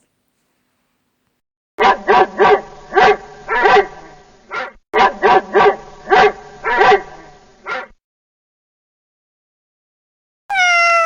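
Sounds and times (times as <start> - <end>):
dog barking: 1.8 - 8.0.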